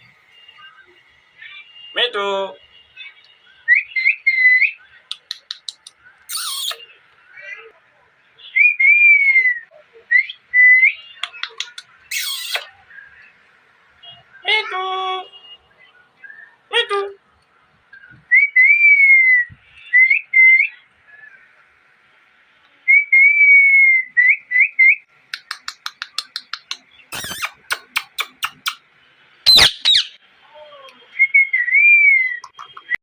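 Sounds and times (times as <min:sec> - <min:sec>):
parakeet clicking chatter: 0:05.1 - 0:06.8, 0:11.2 - 0:12.7, 0:25.3 - 0:28.8
parakeet chirps: 0:05.1 - 0:06.9, 0:11.2 - 0:12.7, 0:25.4 - 0:28.8, 0:29.5 - 0:30.2
parakeet harsh squawk: 0:06.3 - 0:06.8, 0:12.1 - 0:12.7, 0:27.1 - 0:28.7, 0:29.5 - 0:30.2
parakeet whistling: 0:06.3 - 0:06.8, 0:12.1 - 0:12.7, 0:26.3 - 0:28.8, 0:29.5 - 0:30.2.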